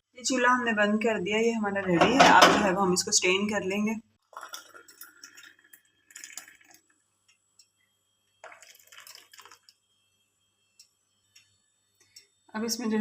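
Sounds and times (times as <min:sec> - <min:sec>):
liquid trickling and dripping: 0:04.2 - 0:09.9.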